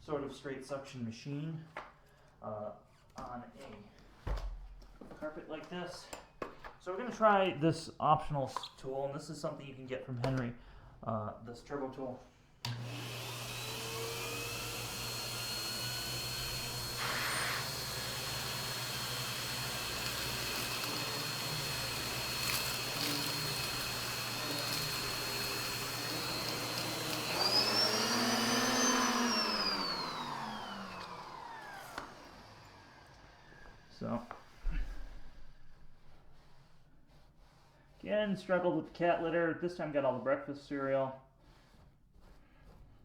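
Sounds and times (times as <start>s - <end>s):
vacuum cleaner running: 12.6s - 35.1s
vacuum motor winding down: 12.7s - 33.9s.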